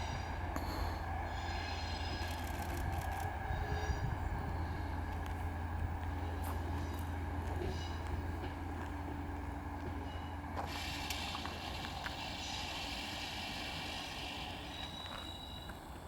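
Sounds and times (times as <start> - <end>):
steam train low rumble: 0.0 - 16.0
steam hiss: 10.6 - 16.0.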